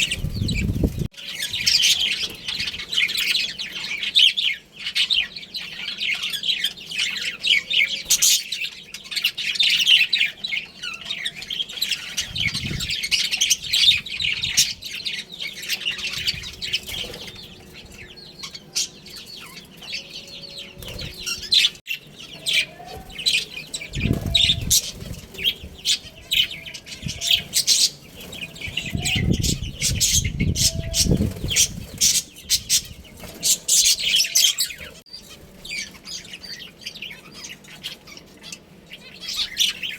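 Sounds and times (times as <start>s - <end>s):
budgerigars chirping: 0.0s - 39.9s
wings fluttering: 16.1s - 17.8s, 20.8s - 21.8s, 22.8s - 36.2s.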